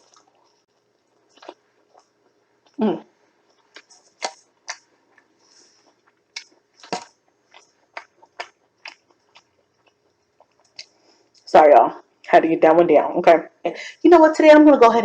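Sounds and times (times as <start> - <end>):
person chewing food: 0.0 - 11.5.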